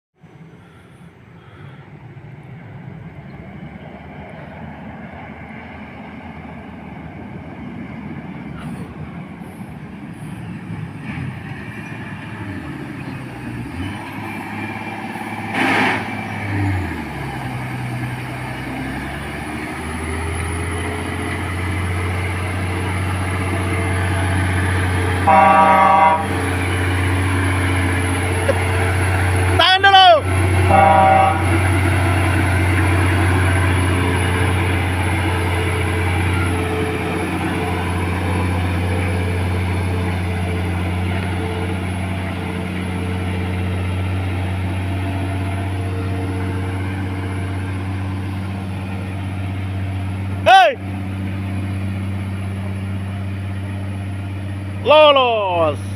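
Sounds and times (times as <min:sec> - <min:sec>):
truck diesel engine labouring: 0:00.2 - 0:55.9
truck horn: 0:24.9 - 0:26.6, 0:29.6 - 0:32.0.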